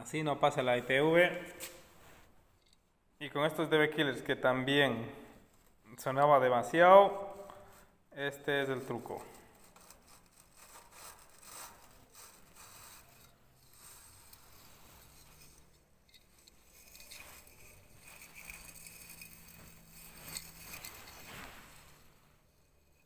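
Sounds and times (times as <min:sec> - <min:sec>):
small hard parts being handled: 0:13.7 - 0:23.0.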